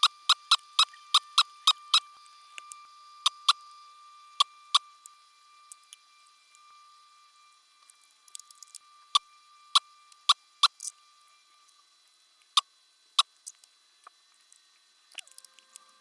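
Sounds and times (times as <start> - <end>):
faint ticks: 13.2 - 16.0.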